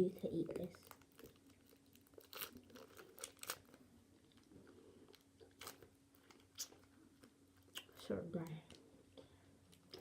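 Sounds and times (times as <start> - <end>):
person chewing crunchy food: 0.8 - 7.9.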